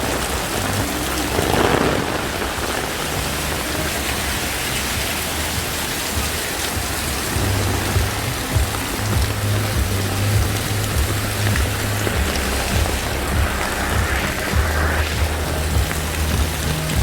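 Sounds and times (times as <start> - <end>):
heavy rain pouring: 0.0 - 17.0
low rumble: 7.2 - 17.0.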